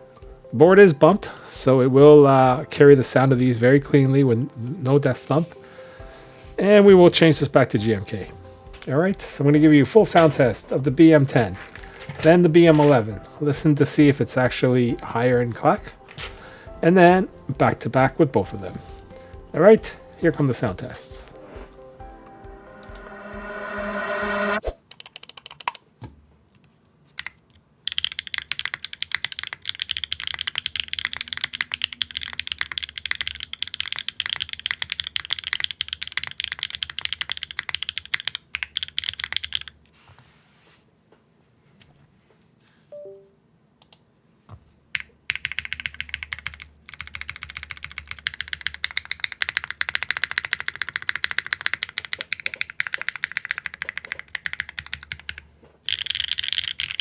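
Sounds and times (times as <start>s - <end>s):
fast mechanical keyboard typing: 6.8s - 18.8s, 24.9s - 25.8s, 27.2s - 39.8s, 45.0s - 57.0s.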